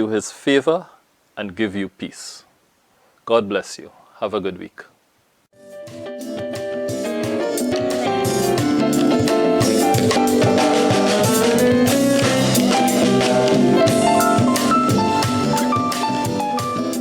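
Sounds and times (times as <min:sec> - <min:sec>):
instrumental music with drum kit: 0:05.6 - 0:17.0.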